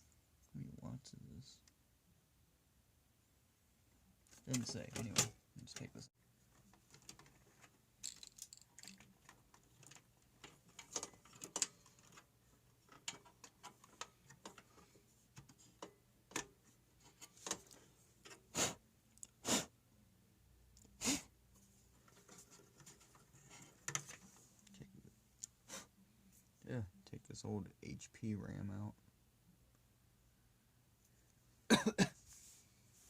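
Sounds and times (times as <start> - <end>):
clicks and rattles inside computer case: 4.3 - 7.8, 8.7 - 18.5, 22.0 - 24.4.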